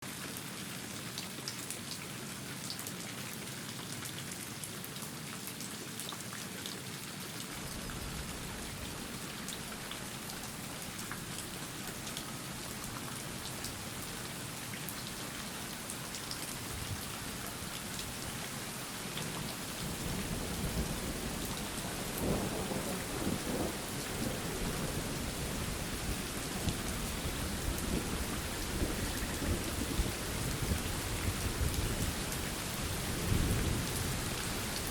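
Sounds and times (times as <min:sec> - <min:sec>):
steady rain: 0:00.0 - 0:34.9
raindrops ticking on surface: 0:00.1 - 0:34.9
low thunder rumbling: 0:19.8 - 0:32.2, 0:33.0 - 0:34.2.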